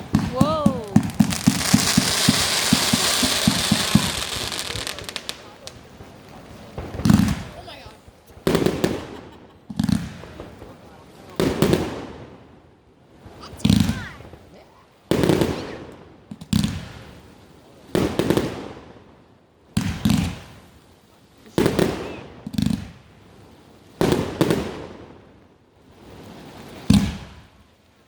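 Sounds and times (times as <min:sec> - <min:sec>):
fireworks bangs: 0:00.0 - 0:12.3.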